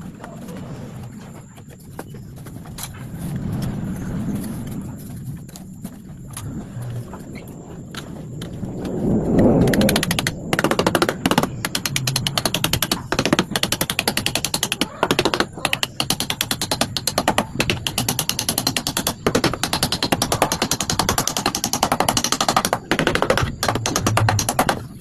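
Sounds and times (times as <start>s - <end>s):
rapid mechanical tool hammering: 9.9s - 25.0s.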